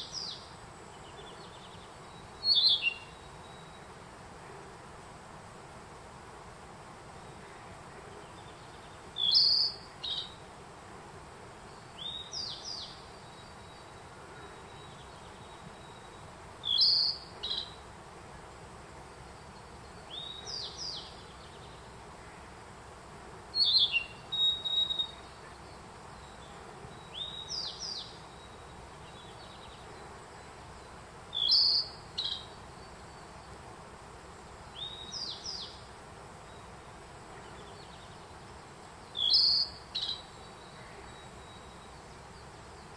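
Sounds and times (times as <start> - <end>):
flycatcher singing: 0.0 - 3.9, 8.4 - 10.4, 11.7 - 17.8, 30.8 - 33.5, 39.1 - 42.9.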